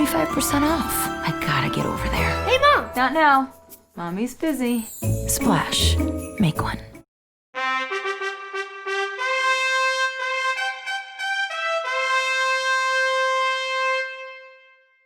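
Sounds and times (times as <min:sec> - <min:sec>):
solo brass melody: 0:07.6 - 0:15.0.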